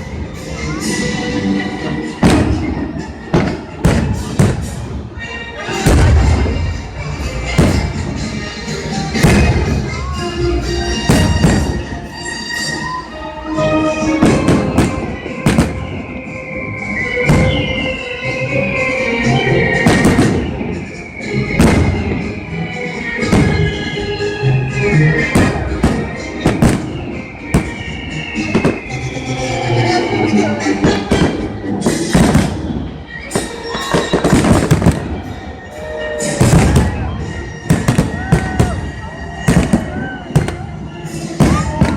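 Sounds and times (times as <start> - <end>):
music over loudspeakers: 0.0 - 41.9
fireworks exploding in loud bangs: 2.1 - 8.4, 9.1 - 12.2, 14.2 - 18.0, 19.6 - 22.4, 23.2 - 23.9, 25.1 - 29.0, 30.8 - 41.9.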